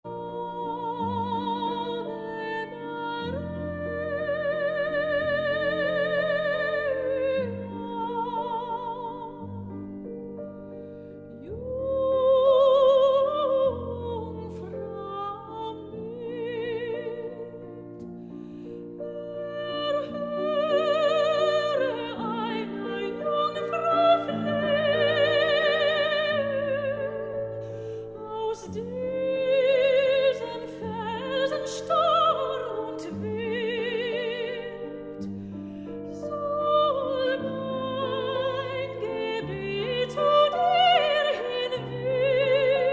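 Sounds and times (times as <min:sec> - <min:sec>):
operatic singing with vibrato: 0:28.2 - 0:35.0, 0:36.1 - 0:42.9.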